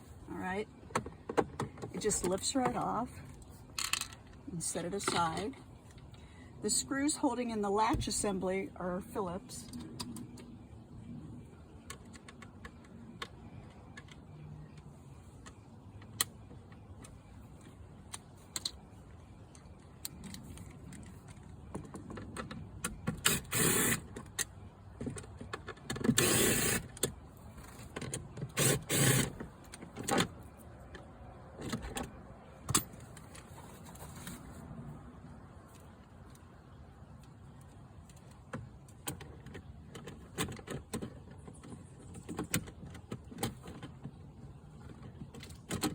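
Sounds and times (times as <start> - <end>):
cordless drill running: 28.6 - 29.4.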